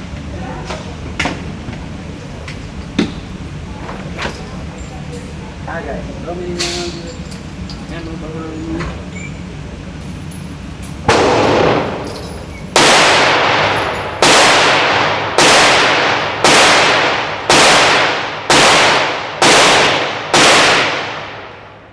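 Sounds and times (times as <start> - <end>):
echoing gunshots: 11.1 - 21.8.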